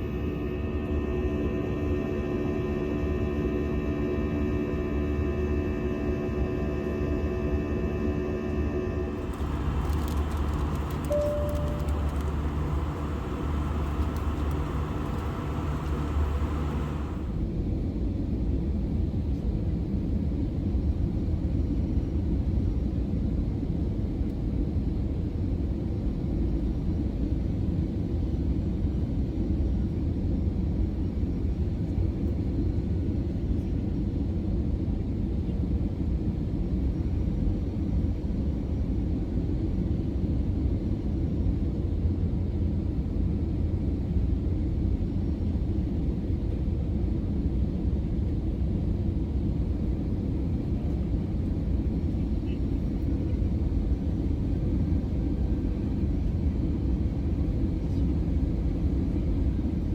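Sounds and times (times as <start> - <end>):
airplane cabin drone: 0.0 - 17.7, 35.0 - 59.9.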